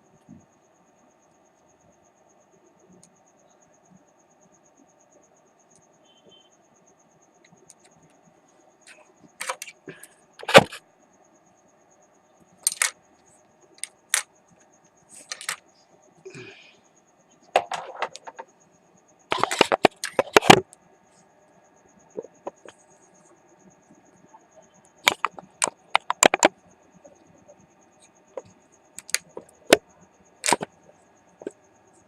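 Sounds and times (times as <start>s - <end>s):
faint steady hum: 0.0s - 32.0s
tools clicking on workbench: 12.6s - 12.9s, 30.4s - 30.7s.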